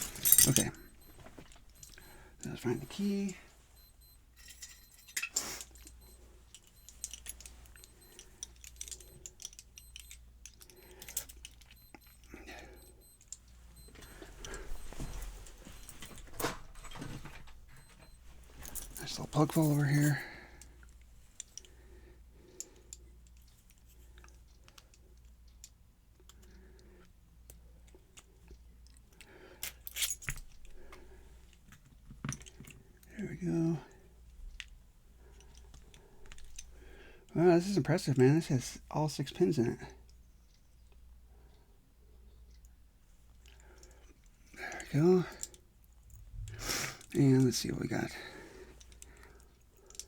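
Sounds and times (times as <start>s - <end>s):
metallic clicks of lock parts: 0.0s - 2.1s, 3.8s - 12.1s, 27.4s - 30.8s, 48.8s - 50.0s
steady low hum: 0.0s - 22.5s.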